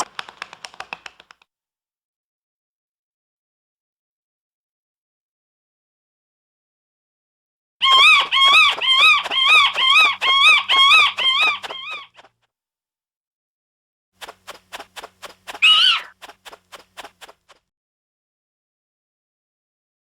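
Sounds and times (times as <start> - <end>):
bats squeaking: 7.8 - 12.3, 14.2 - 17.4.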